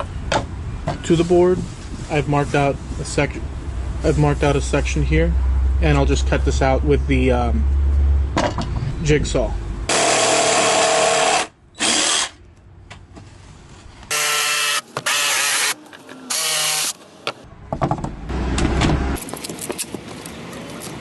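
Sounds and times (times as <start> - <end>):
electric jigsaw cutting: 9.9 - 12.3, 14.1 - 17.0.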